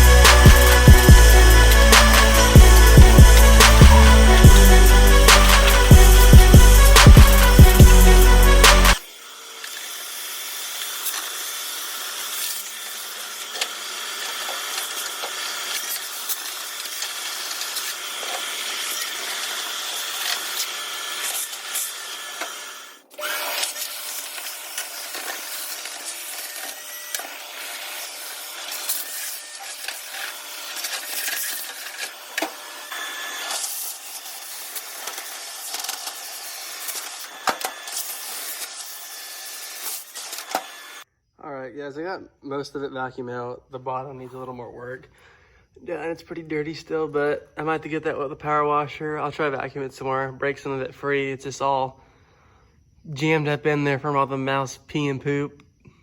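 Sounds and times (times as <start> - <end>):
vacuum cleaner whine: 0.0 - 41.1.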